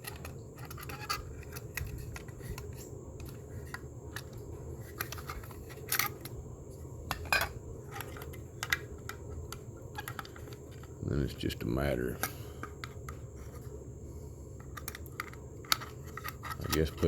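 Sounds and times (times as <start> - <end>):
steady low hum: 0.0 - 17.0
small metal parts clicking: 7.1 - 10.9, 14.6 - 17.0.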